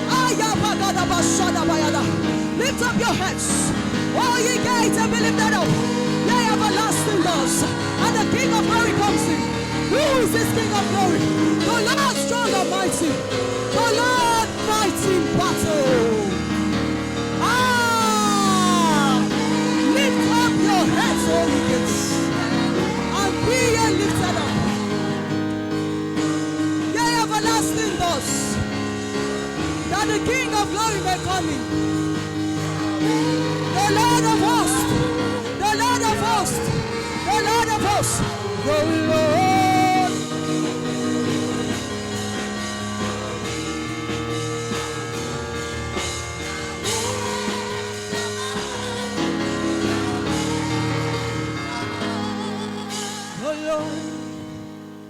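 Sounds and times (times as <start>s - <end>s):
sustained worship chords: 0.0s - 55.0s
person singing or chanting: 32.6s - 45.2s.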